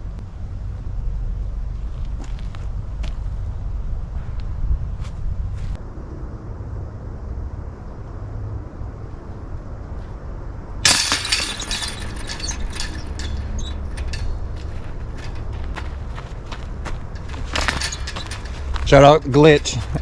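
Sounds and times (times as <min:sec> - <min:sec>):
disc hitting basket chains: 0:10.8 - 0:15.8, 0:17.2 - 0:19.6
chains jangling: 0:10.9 - 0:15.8, 0:17.2 - 0:19.2.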